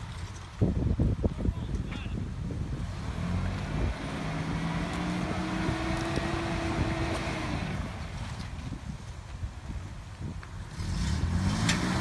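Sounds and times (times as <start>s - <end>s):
truck engine revving under load: 2.7s - 8.6s, 10.7s - 12.0s.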